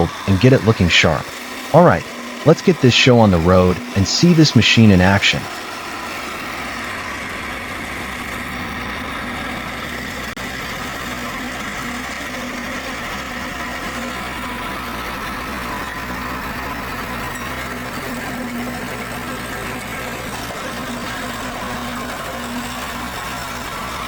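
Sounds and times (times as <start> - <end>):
loader engine running: 0.0 - 24.0.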